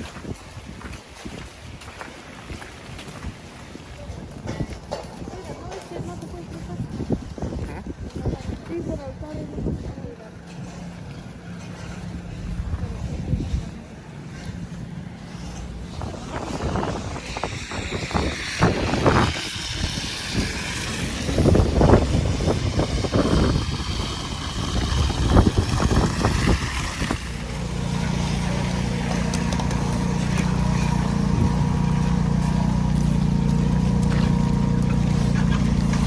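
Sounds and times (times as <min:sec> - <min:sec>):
wind gusts on microphone: 0:00.0 - 0:10.4, 0:11.1 - 0:36.0
vehicle engine humming: 0:10.0 - 0:36.0.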